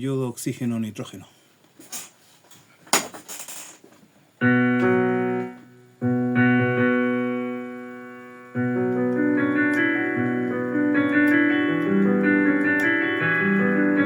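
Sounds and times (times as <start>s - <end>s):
electric keyboard chords: 4.4s - 14.0s.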